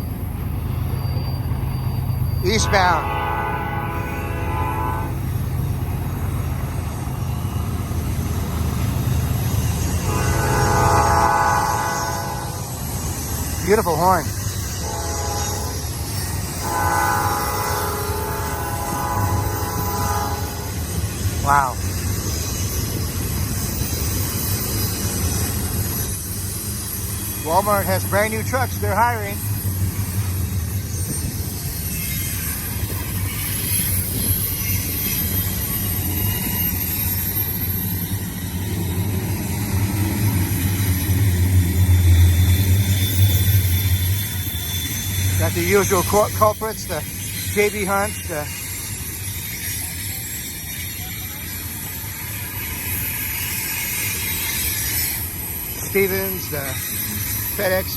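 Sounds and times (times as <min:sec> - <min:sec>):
freight train rumbling: 0:00.0 - 0:57.9
locomotive horn chord: 0:02.5 - 0:05.2, 0:10.0 - 0:12.7, 0:14.8 - 0:15.8, 0:16.6 - 0:20.8.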